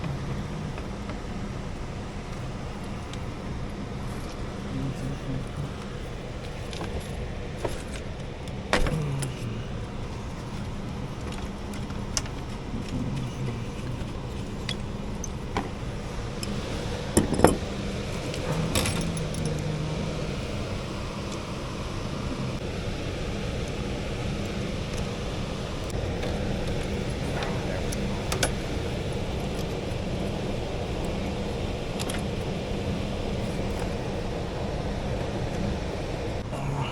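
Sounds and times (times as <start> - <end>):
steady background drone: 0.0 - 36.9
metal tools clinking: 17.2 - 17.7, 18.5 - 19.6.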